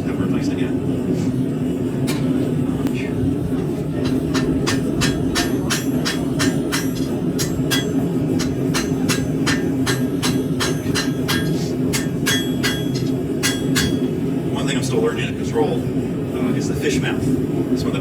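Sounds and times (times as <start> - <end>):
steady low rumble: 0.0 - 17.9
hammer striking steel on anvil: 4.0 - 14.2.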